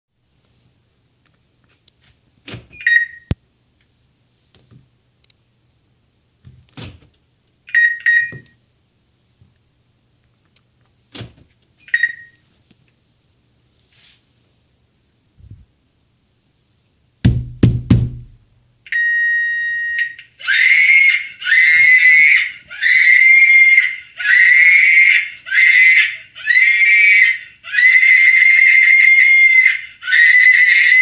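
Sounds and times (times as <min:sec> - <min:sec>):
car alarm beeps: 0:02.8 - 0:03.3, 0:07.7 - 0:08.6, 0:11.8 - 0:12.4, 0:18.9 - 0:20.2.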